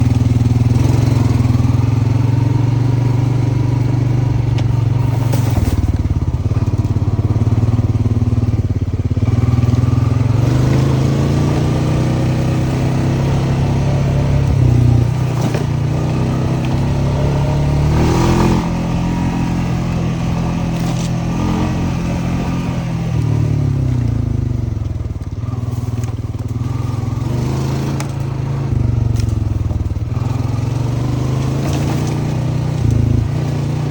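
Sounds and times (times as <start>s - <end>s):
atv engine running: 0.0s - 33.9s.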